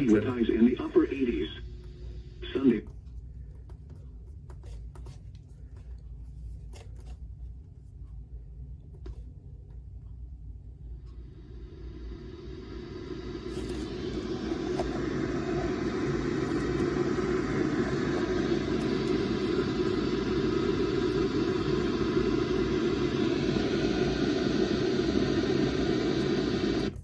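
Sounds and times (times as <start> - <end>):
radio static hiss: 0.0 - 2.9, 11.3 - 27.0.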